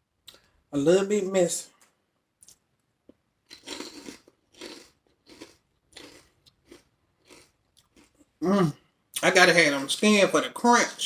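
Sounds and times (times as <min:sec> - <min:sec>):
crunchy chewing: 0:03.4 - 0:08.3.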